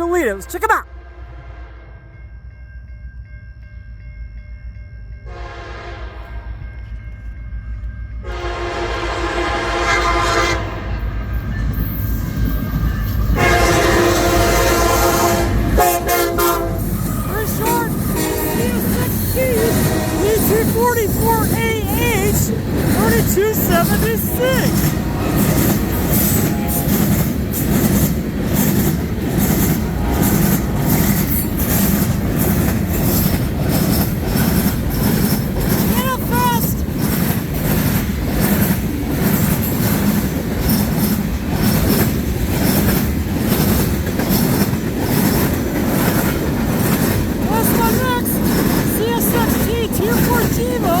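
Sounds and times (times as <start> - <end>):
train rumble: 0.0 - 51.0
locomotive horn blasts: 5.3 - 6.5, 8.2 - 11.1, 13.3 - 20.7, 23.5 - 27.2, 29.7 - 31.0.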